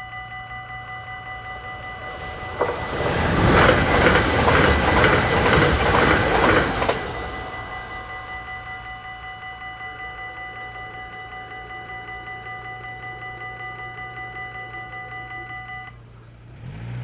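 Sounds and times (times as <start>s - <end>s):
crossing warning bell ringing: 0.0s - 16.0s
train rushing past: 0.7s - 10.3s.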